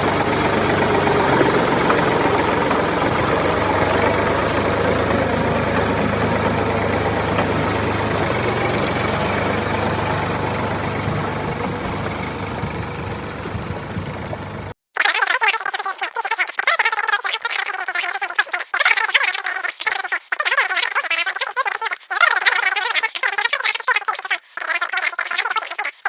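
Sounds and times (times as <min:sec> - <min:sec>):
small engine idling: 0:00.0 - 0:14.8.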